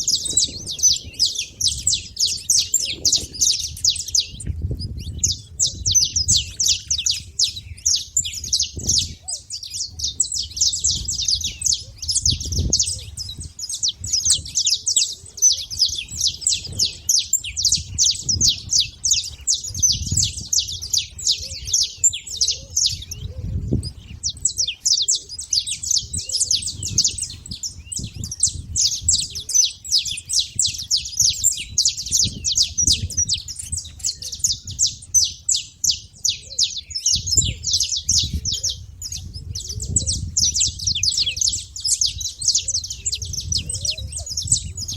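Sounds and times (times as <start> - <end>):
finches chirping: 0.0 - 44.9.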